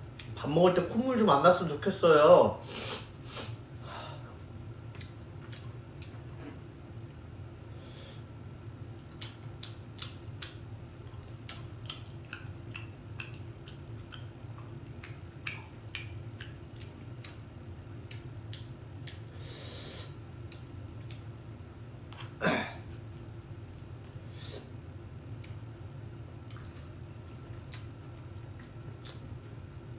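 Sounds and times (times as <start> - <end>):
steady low hum: 0.0 - 29.9
chewing and utensil clicks: 9.2 - 17.4, 18.0 - 19.2, 25.4 - 29.3.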